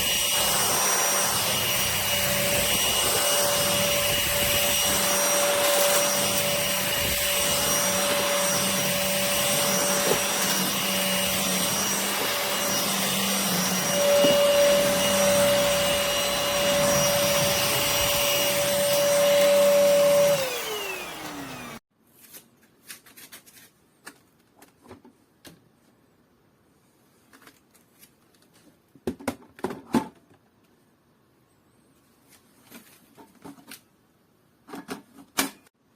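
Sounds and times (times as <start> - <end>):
vacuum cleaner motor whine: 0.0 - 21.8.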